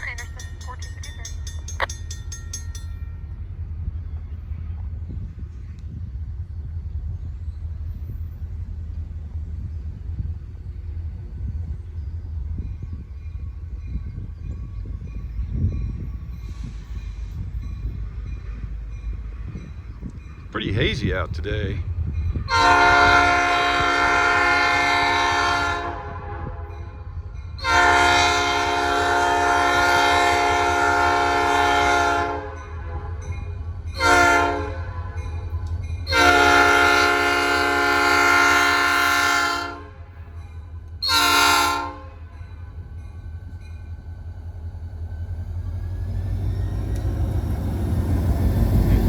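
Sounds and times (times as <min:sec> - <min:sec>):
train rumble: 0:00.0 - 0:49.0
locomotive air horn blasts: 0:22.5 - 0:26.9, 0:27.6 - 0:33.3, 0:34.0 - 0:35.4, 0:36.1 - 0:40.1, 0:41.0 - 0:42.3.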